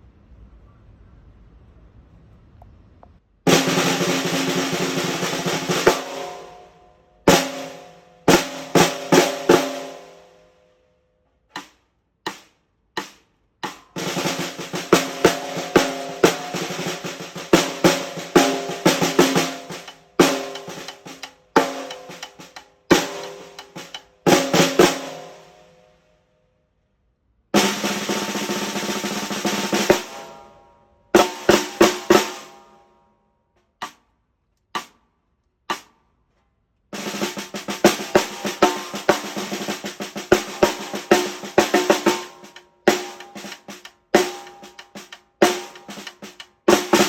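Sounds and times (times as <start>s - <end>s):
snare drum strokes and rolls: 3.5s - 6.6s, 7.3s - 10.2s, 11.6s - 25.6s, 27.6s - 30.5s, 31.2s - 32.7s, 33.8s - 34.0s, 34.8s - 35.0s, 35.7s - 36.0s, 37.0s - 47.0s.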